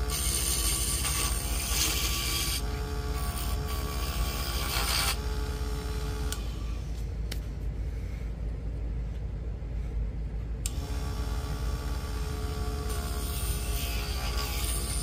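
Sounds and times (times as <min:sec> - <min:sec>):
small lathe motor whining: 0:00.0 - 0:06.8, 0:10.7 - 0:15.0
low hum: 0:01.0 - 0:15.0.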